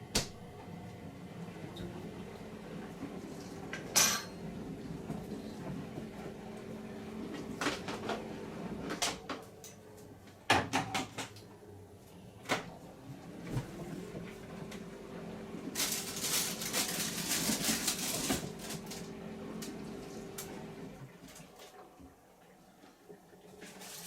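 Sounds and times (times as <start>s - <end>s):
crockery and cutlery clinking: 3.9s - 4.4s.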